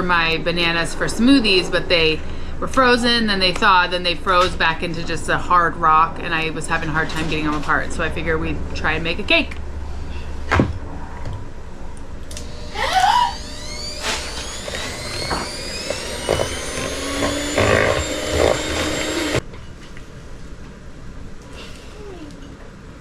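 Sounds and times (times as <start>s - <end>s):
electric mixer whining: 12.3s - 19.4s
mixer knocking: 12.4s - 19.4s.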